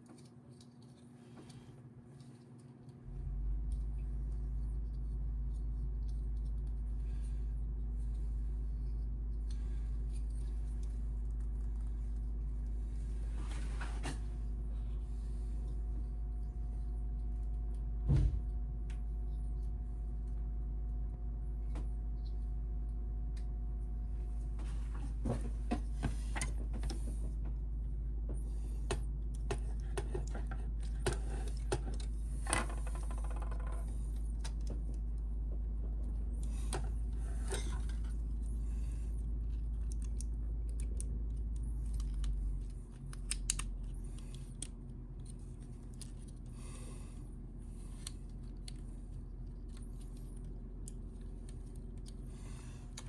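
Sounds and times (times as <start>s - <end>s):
low hum: 3.0s - 53.0s
plastic parts clicking: 39.5s - 46.5s.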